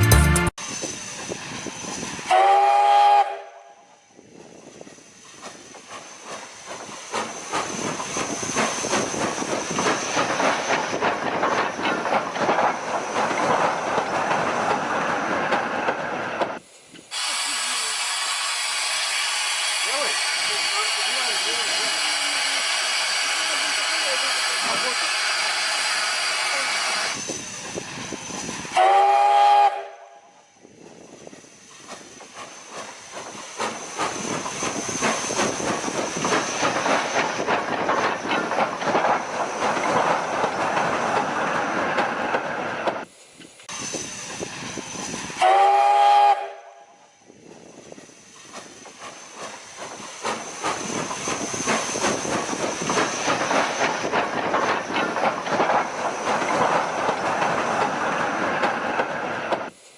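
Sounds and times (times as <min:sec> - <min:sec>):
moving train noise: 0:00.0 - 0:59.9
steam locomotive whistle: 0:02.3 - 0:04.0, 0:17.1 - 0:27.2, 0:28.7 - 0:30.5, 0:45.4 - 0:47.2.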